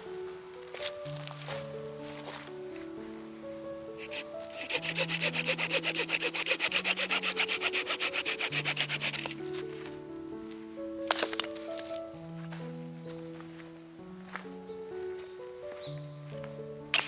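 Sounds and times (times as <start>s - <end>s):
background music: 0.0s - 17.0s
fast rubbing strokes: 4.0s - 9.4s.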